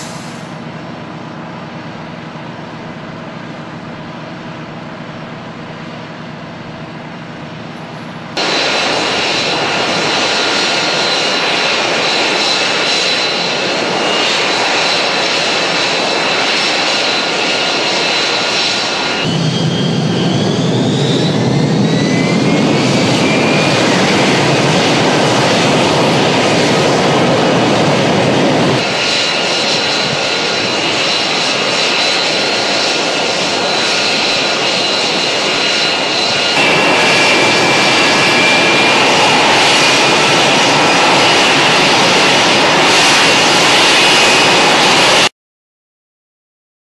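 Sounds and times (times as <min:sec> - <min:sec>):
jet engine roaring and whining: 0:00.0 - 0:45.3
heavy low rumble: 0:19.2 - 0:29.1.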